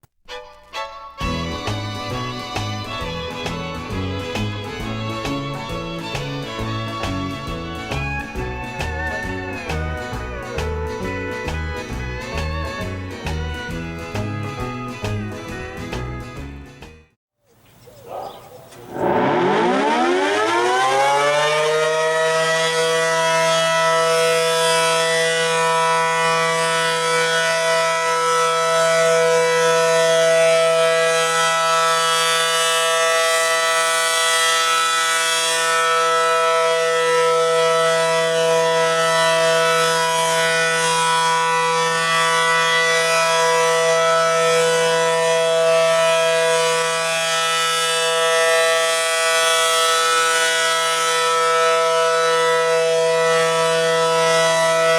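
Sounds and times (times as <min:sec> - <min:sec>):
warning siren wailing: 0:06.6 - 0:11.6, 0:18.0 - 0:54.9.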